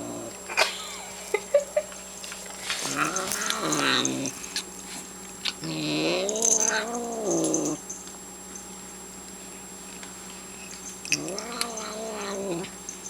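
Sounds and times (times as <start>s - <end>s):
cat growling: 0.0s - 0.6s, 2.8s - 4.6s, 5.5s - 7.8s, 11.1s - 12.8s
chewing clicks: 5.3s - 8.2s, 9.3s - 12.8s.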